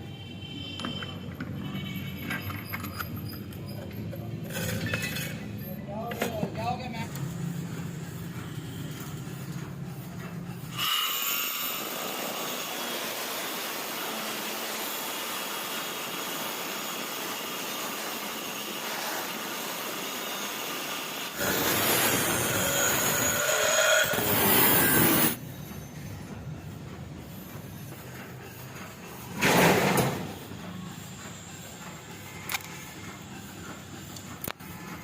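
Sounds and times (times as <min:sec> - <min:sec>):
angle grinder cutting steel pipe: 0:10.7 - 0:25.4.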